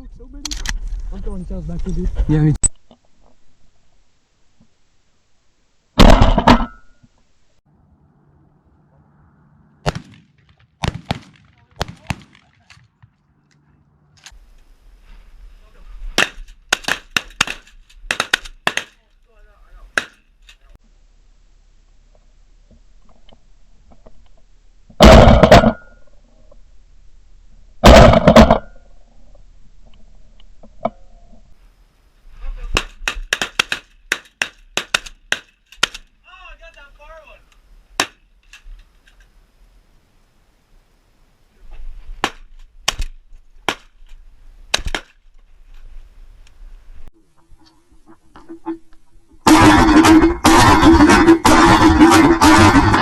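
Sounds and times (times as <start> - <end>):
shotgun shots: 6.0 - 6.8, 9.8 - 12.5, 16.2 - 19.0, 25.0 - 25.8, 27.8 - 28.6, 32.7 - 36.0, 38.0 - 38.2.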